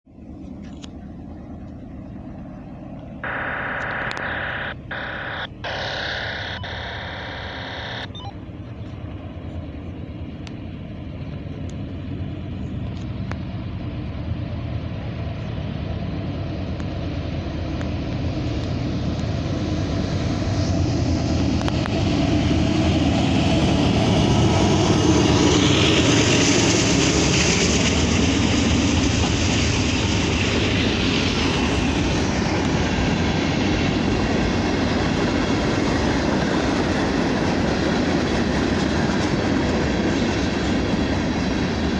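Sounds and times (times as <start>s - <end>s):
train rumbling past: 8.5s - 41.9s.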